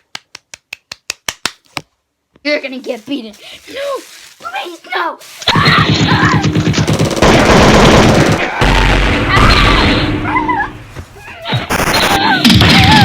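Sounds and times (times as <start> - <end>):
booms and blasts: 5.6 - 10.9
wailing cries: 8.4 - 13.0.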